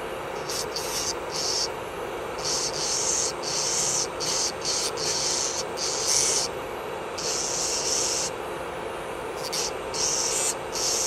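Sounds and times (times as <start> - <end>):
electric nail drill running: 0.4 - 1.7, 2.4 - 6.5, 7.2 - 8.3, 9.4 - 11.0
gritty hiss of filing: 0.4 - 1.7, 2.4 - 6.5, 9.4 - 11.0.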